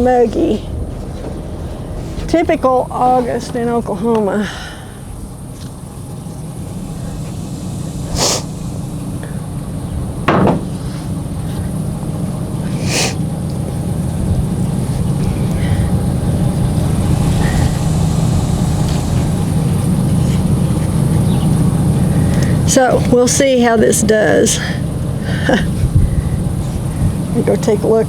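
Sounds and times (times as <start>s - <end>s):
truck engine rumbling: 0.0s - 28.0s
sharp knocks: 10.3s - 10.9s.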